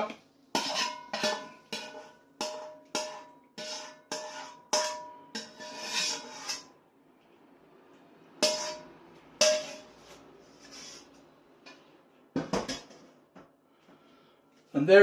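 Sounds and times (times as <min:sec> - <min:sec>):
metal utensil clanking on wok: 0:00.0 - 0:06.7, 0:08.4 - 0:10.0.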